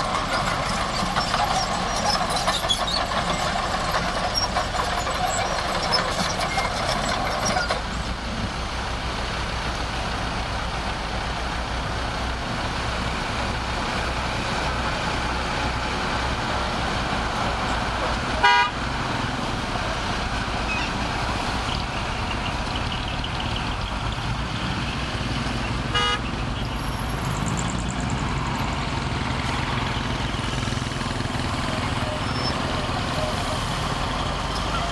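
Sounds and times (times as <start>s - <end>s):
diesel engine running: 0.0s - 34.9s
short horn toot: 25.9s - 26.2s.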